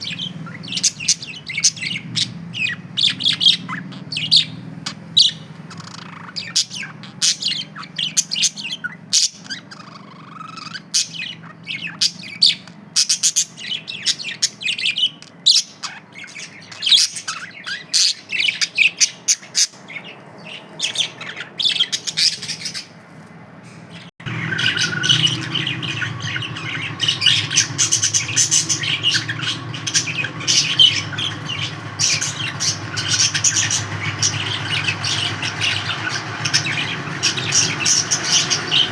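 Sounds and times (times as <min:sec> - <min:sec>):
budgerigars chirping and squawking: 0:00.0 - 0:38.9
steady low hum: 0:23.4 - 0:38.9.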